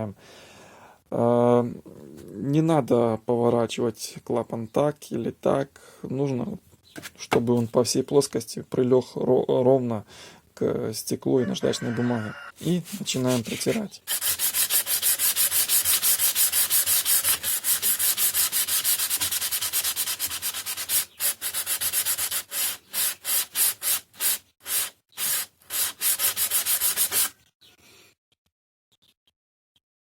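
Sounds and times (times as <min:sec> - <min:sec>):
metal part rubbed on sandpaper: 0:12.6 - 0:27.4.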